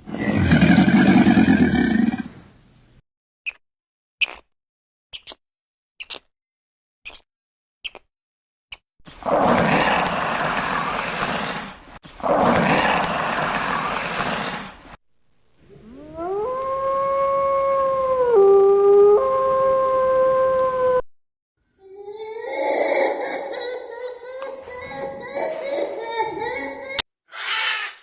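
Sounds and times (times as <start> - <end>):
animal roars: 0.0 - 2.4, 9.2 - 14.8, 15.7 - 21.0
rising animal call: 15.7 - 21.0, 27.3 - 28.0.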